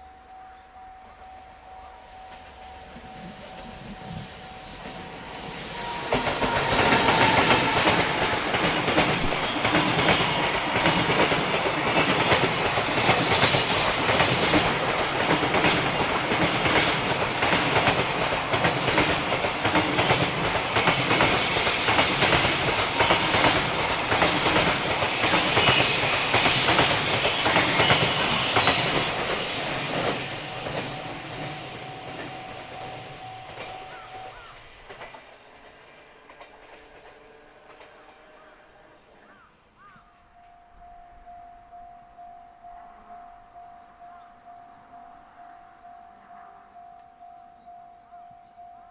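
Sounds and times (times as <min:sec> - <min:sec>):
train wheels clicking over rail joints: 0:02.3 - 0:38.5.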